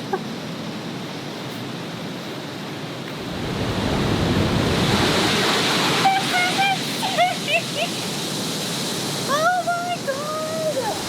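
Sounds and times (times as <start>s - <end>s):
wind buffeting microphone: 3.1s - 6.7s, 10.5s - 11.0s
waterfall roaring: 3.1s - 11.0s.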